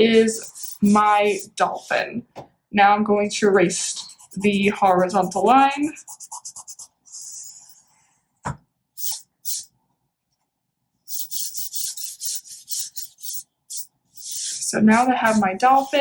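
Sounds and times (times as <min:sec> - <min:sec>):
eraser rubbing on paper: 0:00.0 - 0:02.1, 0:03.7 - 0:08.0, 0:09.0 - 0:09.7, 0:11.1 - 0:16.0.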